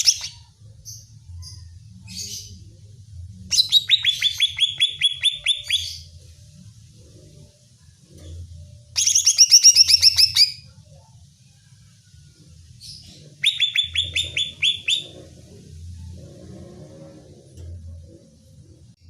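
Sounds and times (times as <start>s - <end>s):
bird chirping rapidly: 3.5s - 6.1s, 9.0s - 10.6s, 12.9s - 15.3s.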